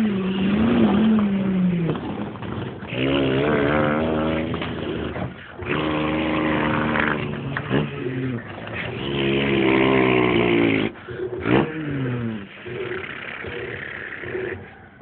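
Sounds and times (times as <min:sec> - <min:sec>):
man imitating truck engine: 0:02.9 - 0:14.6.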